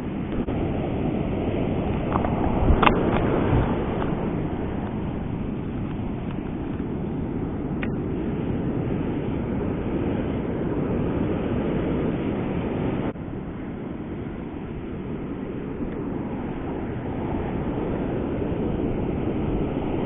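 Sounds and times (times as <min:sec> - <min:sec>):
ocean surf: 0:00.0 - 0:20.0
wind on microphone: 0:00.0 - 0:20.0.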